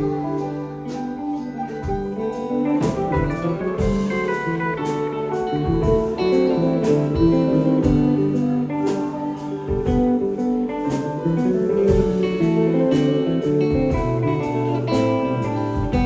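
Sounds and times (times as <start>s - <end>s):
bass guitar: 0.0s - 16.0s
electric guitar lines: 0.0s - 16.0s.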